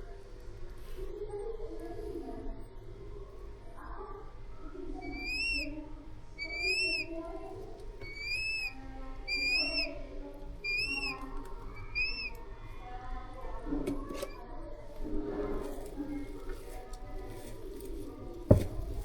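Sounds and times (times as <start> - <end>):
hawk-eagle chick cheeping: 5.0 - 5.8, 6.4 - 7.2, 8.0 - 12.5.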